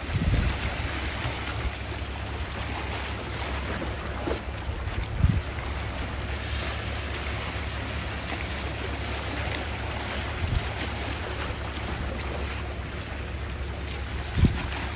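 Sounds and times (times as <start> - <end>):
sea waves washing: 0.0 - 14.9
wind rumbling on microphone: 0.0 - 14.9.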